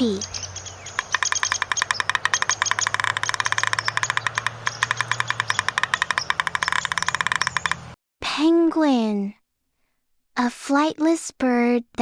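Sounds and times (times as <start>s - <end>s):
woodpecker hammering on wood: 0.3s - 8.0s.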